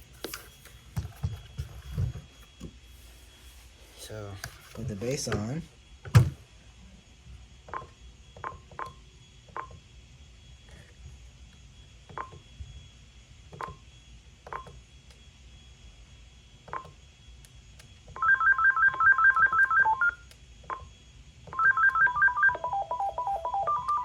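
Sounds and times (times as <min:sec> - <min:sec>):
electronic ringtone melody: 0:18.2 - 0:20.2, 0:21.6 - 0:24.0
phone key-press beeps: 0:18.2 - 0:20.2, 0:21.6 - 0:24.0.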